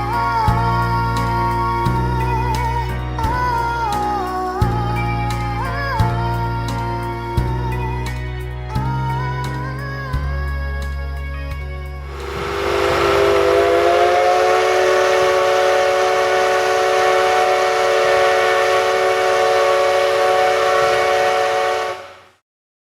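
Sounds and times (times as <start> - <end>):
steam hissing: 12.1 - 22.3
steam locomotive whistle: 12.1 - 22.4.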